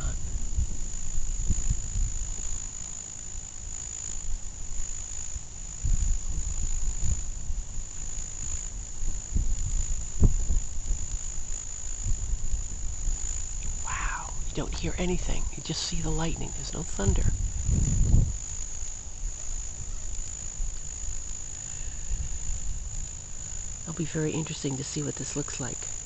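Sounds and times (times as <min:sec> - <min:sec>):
insects trilling: 0:00.0 - 0:26.0
low rumbling: 0:05.7 - 0:24.4.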